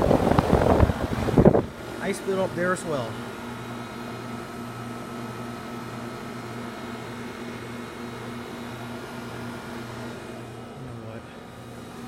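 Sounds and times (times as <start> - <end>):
heat pump unit humming: 0.0 - 12.0.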